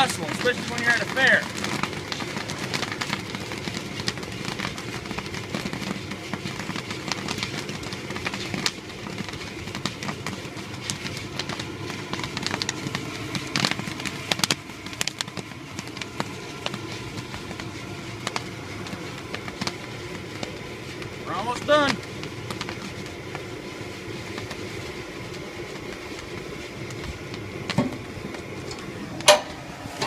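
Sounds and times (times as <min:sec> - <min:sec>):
burner hissing: 0:00.0 - 0:30.0
corn kernels popping: 0:00.0 - 0:30.0.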